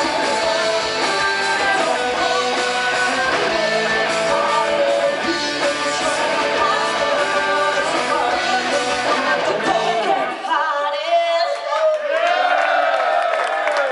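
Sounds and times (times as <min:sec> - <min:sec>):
electric guitar: 0:00.0 - 0:10.6
bass and drums: 0:00.0 - 0:11.3
person singing: 0:00.0 - 0:11.8
crowd cheering and whooping: 0:12.0 - 0:13.9.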